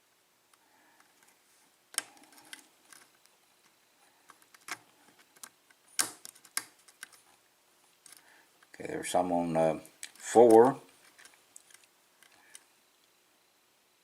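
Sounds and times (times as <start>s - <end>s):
lock pins clicking: 4.3s - 7.2s.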